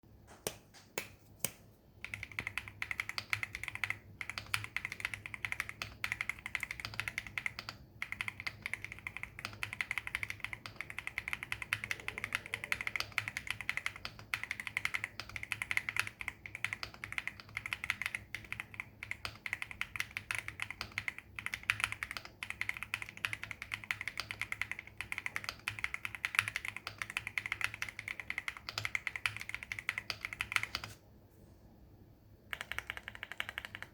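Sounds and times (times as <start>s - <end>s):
fast typing on mechanical keyboard: 2.0s - 31.0s, 32.5s - 33.9s.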